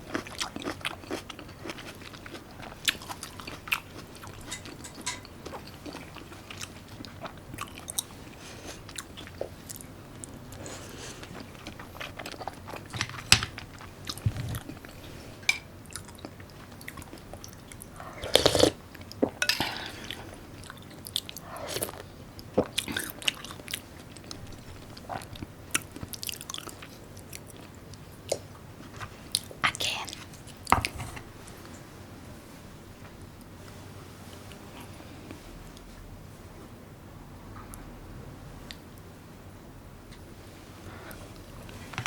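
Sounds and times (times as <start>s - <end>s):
close-miked chewing and biting: 0.0s - 15.0s.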